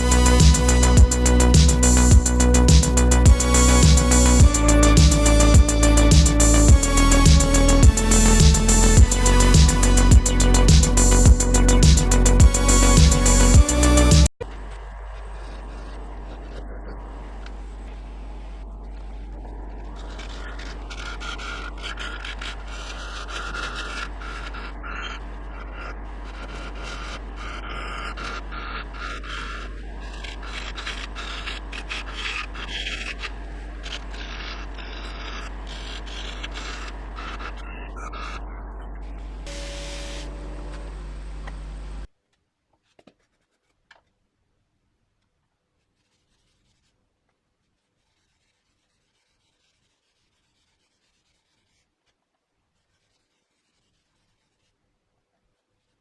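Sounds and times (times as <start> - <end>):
faint rubbing or scraping: 45.8 - 47.0, 47.6 - 52.2, 52.8 - 54.8.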